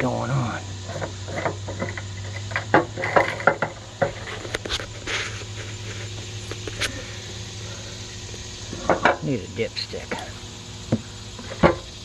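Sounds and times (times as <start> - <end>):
low hum: 0.0 - 12.0
short scrape or rustle: 4.2 - 7.1.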